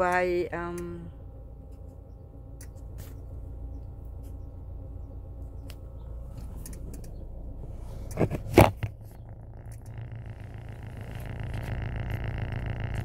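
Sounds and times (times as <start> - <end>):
car engine and road noise: 0.0 - 13.0
light clicks: 5.6 - 7.2.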